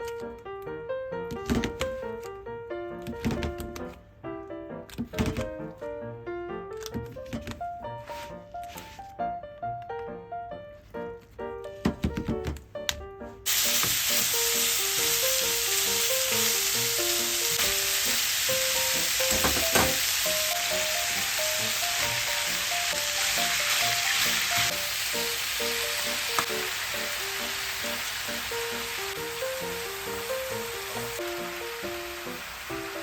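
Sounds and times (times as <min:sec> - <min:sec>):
food sizzling in hot oil: 0:13.5 - 0:33.0.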